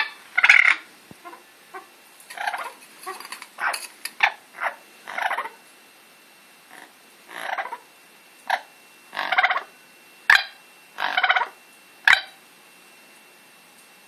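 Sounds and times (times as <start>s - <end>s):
parrot squawks and chattering: 0.0s - 5.6s, 6.7s - 9.7s, 10.3s - 12.4s.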